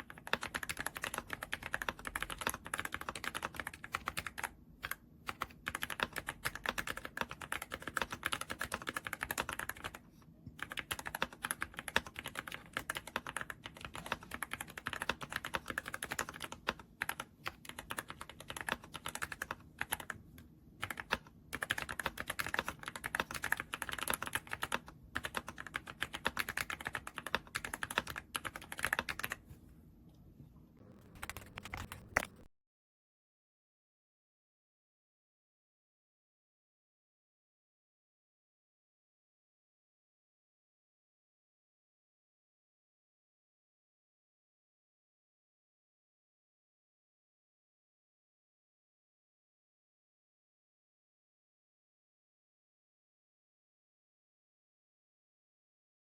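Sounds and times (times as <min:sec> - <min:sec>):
mechanical keyboard typing: 0:00.0 - 0:10.0, 0:10.6 - 0:20.2, 0:20.8 - 0:29.4, 0:30.8 - 0:32.5.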